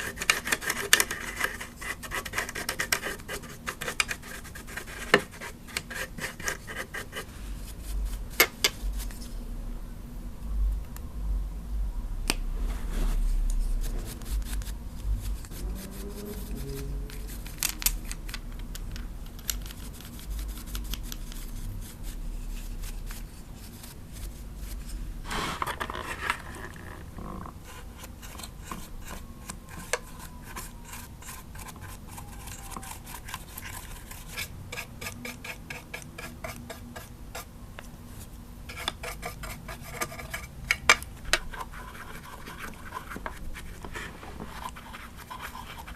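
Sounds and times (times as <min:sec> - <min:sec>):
brushes sweeping hard plastic: 0:12.6 - 0:17.6, 0:19.8 - 0:26.4, 0:41.5 - 0:45.9.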